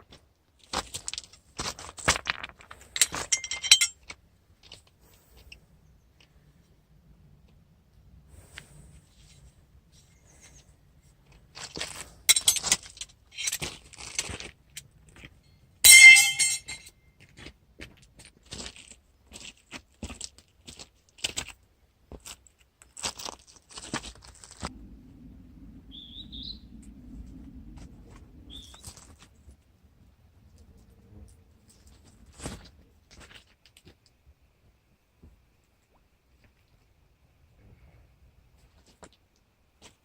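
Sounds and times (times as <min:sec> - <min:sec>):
camping gear clattering: 0:02.3 - 0:04.2, 0:15.8 - 0:16.9
loud ringing clink: 0:03.3 - 0:03.9, 0:15.8 - 0:16.9
low steady rumble: 0:03.3 - 0:12.5, 0:24.0 - 0:33.2
bird chirps: 0:25.9 - 0:26.8, 0:28.5 - 0:28.8.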